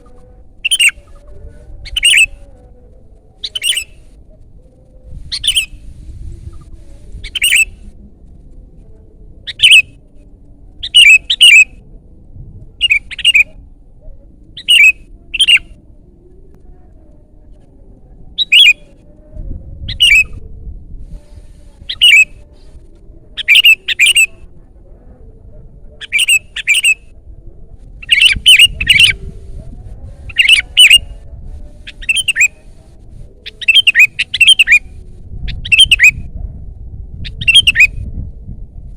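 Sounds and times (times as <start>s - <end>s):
bulbul calling: 0.6s - 1.1s, 1.9s - 2.3s, 3.4s - 4.0s, 7.2s - 7.7s, 9.5s - 9.8s, 10.8s - 11.7s, 12.8s - 13.6s, 14.6s - 15.7s, 18.4s - 18.8s, 21.9s - 22.3s, 23.4s - 24.4s, 26.0s - 27.0s, 28.0s - 29.2s, 30.3s - 31.1s, 31.9s - 32.6s, 33.5s - 34.9s, 35.6s - 36.1s, 37.4s - 37.9s.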